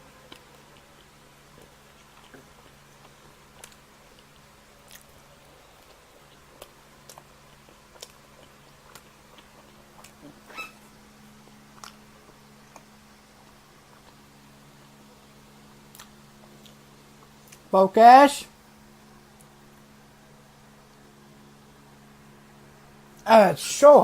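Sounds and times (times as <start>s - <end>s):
faint steady hum: 0.0s - 24.0s
chewing with wet mouth smacks: 0.3s - 10.4s, 11.7s - 14.3s, 15.9s - 17.7s.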